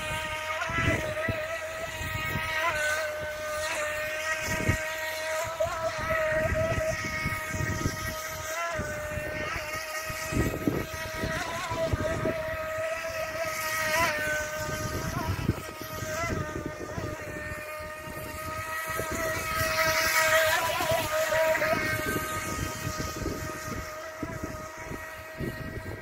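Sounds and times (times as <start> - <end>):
electric motor whining: 0.0 - 26.0
wind buffeting microphone: 0.0 - 26.0.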